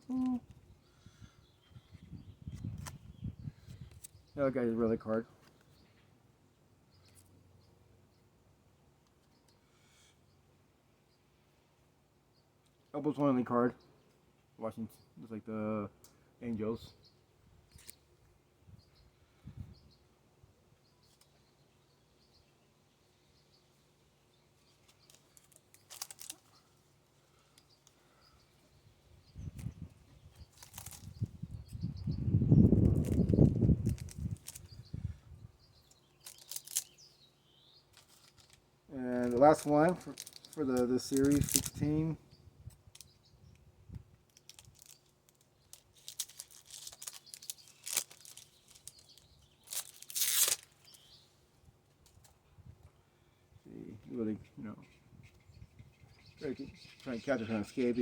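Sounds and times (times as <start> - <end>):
foil pack crackling: 24.9 - 26.6, 30.5 - 31.2, 32.8 - 34.7, 36.0 - 37.0, 39.2 - 42.0, 44.3 - 51.0
card handling rumble: 37.9 - 42.1.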